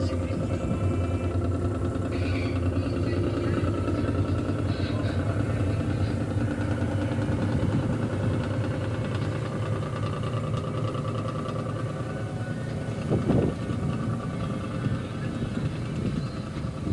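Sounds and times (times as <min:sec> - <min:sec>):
tugboat engine humming: 0:00.0 - 0:16.9.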